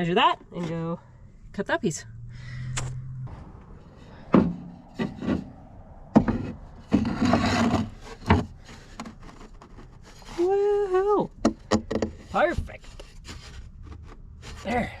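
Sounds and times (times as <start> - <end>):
wood scraping on wood: 3.6 - 15.0
wooden boards knocking: 11.4 - 12.2.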